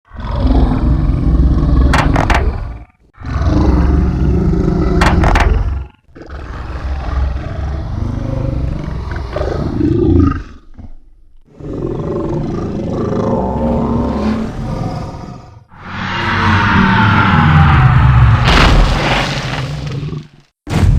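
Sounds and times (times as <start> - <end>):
low rough roaring growls: 0.1 - 18.5
sharp clicks: 1.9 - 2.6, 5.0 - 5.8.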